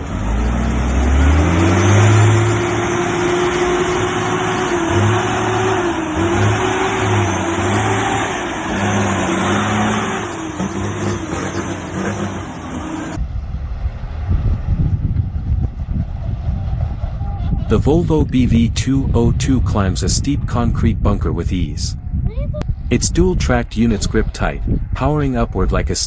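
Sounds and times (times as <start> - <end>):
truck diesel engine under load: 0.0 - 13.2.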